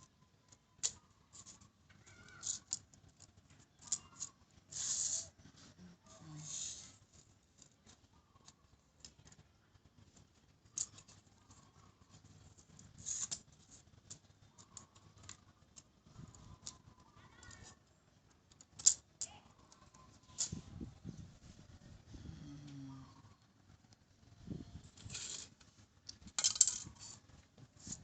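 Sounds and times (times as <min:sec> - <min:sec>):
plastic toy parts clicking: 0:00.5 - 0:05.3, 0:10.2 - 0:11.3, 0:12.8 - 0:20.6, 0:25.0 - 0:27.2.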